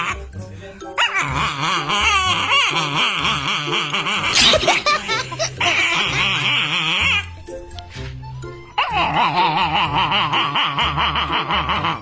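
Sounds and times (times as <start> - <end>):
quick rising yelps: 4.2 - 5.8.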